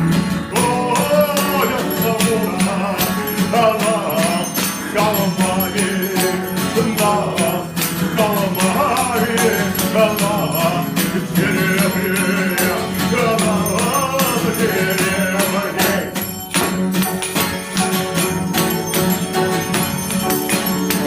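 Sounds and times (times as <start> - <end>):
person singing: 0.5 - 16.4
small bells struck: 0.5 - 21.0.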